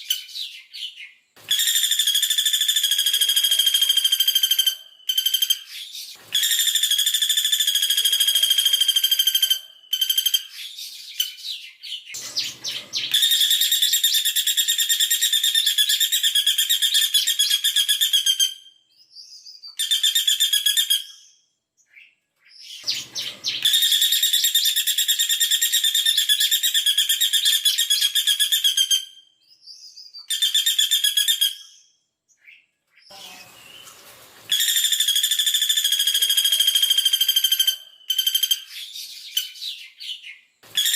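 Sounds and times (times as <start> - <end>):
woodpecker high trills: 34.5 - 39.7.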